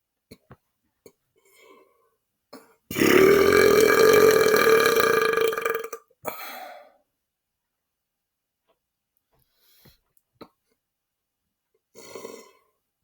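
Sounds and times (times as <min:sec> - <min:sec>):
man belching loudly: 0:02.9 - 0:06.0.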